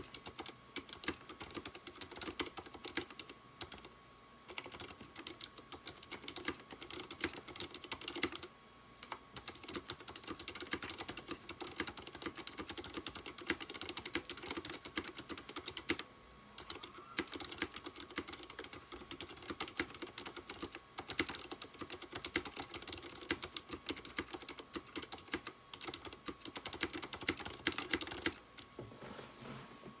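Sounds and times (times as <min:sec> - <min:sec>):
mechanical keyboard typing: 0:00.0 - 0:03.9, 0:04.5 - 0:16.0, 0:16.6 - 0:28.7.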